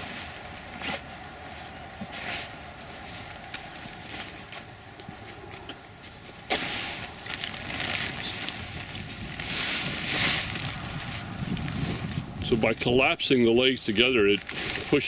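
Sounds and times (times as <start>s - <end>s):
air rushing out of tent: 6.4s - 12.7s.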